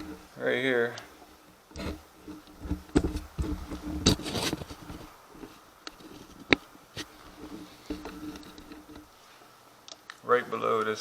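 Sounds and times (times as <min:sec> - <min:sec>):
metal stand scraping: 0:00.0 - 0:00.5, 0:01.6 - 0:09.2
sharp clicks and knocks: 0:01.0 - 0:09.1.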